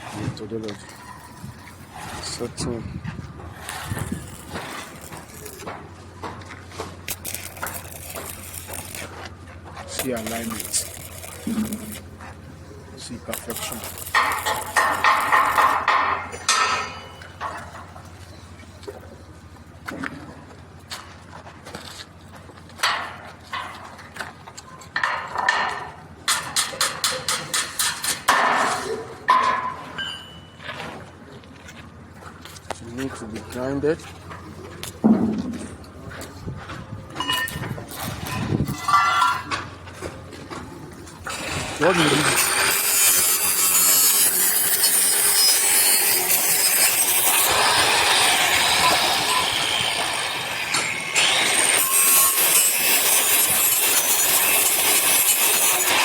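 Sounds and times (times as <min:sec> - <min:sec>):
angle grinder grinding steel: 0:03.5 - 0:05.8, 0:07.0 - 0:12.3, 0:13.0 - 0:17.4, 0:41.2 - 0:56.0
hammer striking steel: 0:13.4 - 0:17.7, 0:38.3 - 0:39.7.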